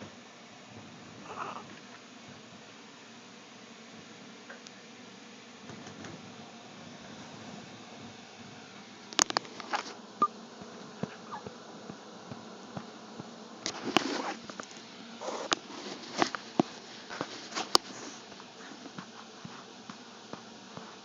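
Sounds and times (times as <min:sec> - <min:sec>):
person hiccupping: 0:01.3 - 0:01.7.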